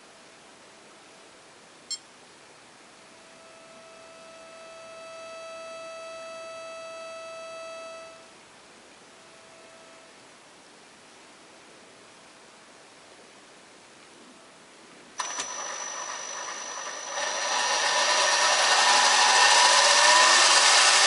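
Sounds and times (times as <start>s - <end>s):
electric motor whine: 15.2s - 21.0s.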